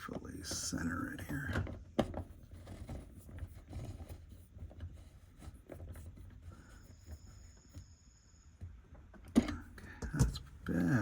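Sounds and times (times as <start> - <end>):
faint scratching and small clicks: 0.0 - 8.0.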